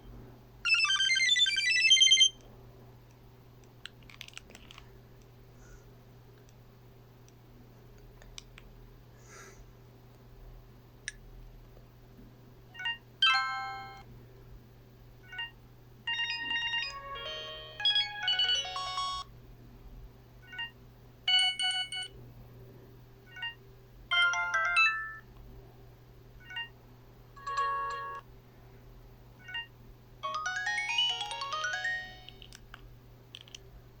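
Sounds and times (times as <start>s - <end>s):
polyphonic phone ringtones: 0.7s - 2.4s, 12.8s - 14.0s, 16.1s - 19.2s, 21.3s - 22.1s, 23.3s - 25.2s, 27.4s - 28.2s, 29.4s - 32.4s.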